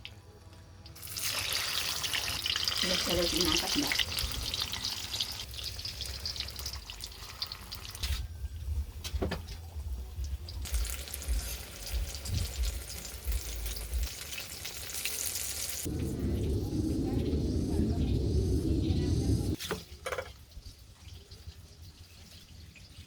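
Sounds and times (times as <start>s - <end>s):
food sizzling in hot oil: 1.0s - 8.0s, 10.6s - 16.6s
low rumble: 15.8s - 19.6s.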